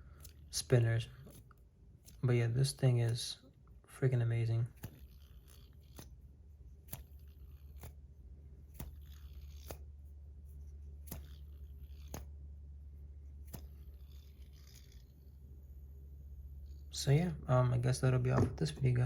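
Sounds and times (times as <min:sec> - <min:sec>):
steady low hum: 0:00.0 - 0:19.0
metal fidget toy clicks: 0:11.1 - 0:12.3.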